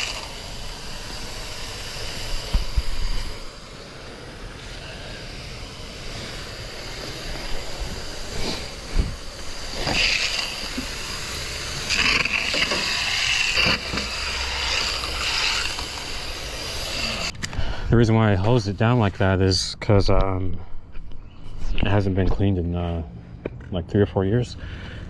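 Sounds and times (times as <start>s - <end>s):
hose water spraying on metal coil: 0.0s - 17.4s.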